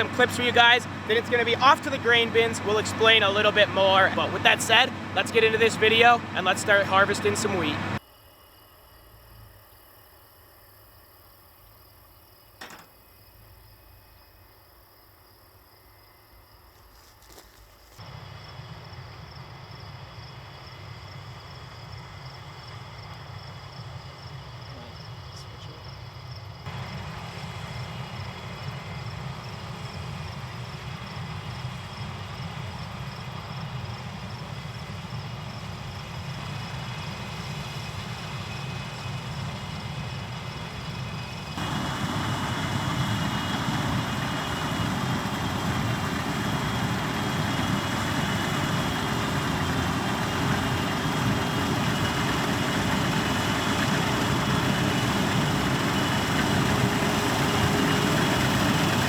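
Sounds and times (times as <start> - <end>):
heavy machine engine running: 0.0 - 8.0, 26.7 - 59.0
crickets chirping: 8.0 - 27.0, 28.1 - 59.0.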